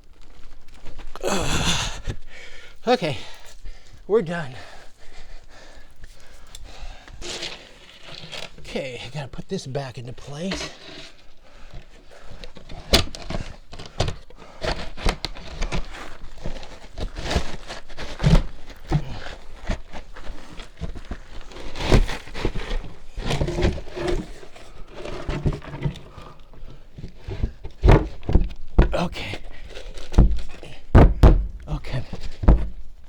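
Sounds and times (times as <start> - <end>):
heavy thuds: 27.3 - 33.0
wooden door scraping and bumping: 29.7 - 33.0.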